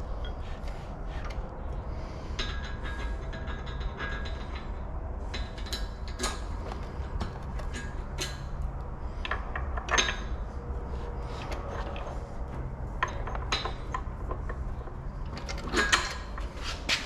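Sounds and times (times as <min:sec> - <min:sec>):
steady low hum: 0:00.0 - 0:17.0
metal tools clinking: 0:09.2 - 0:12.3, 0:13.0 - 0:17.0.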